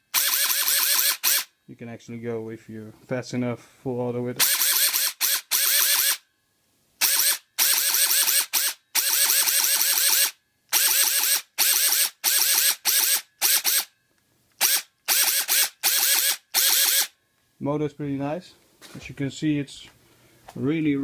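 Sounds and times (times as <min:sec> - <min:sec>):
airsoft rifle firing bursts: 0:00.1 - 0:01.5, 0:04.4 - 0:06.2, 0:07.0 - 0:13.9, 0:14.6 - 0:17.1.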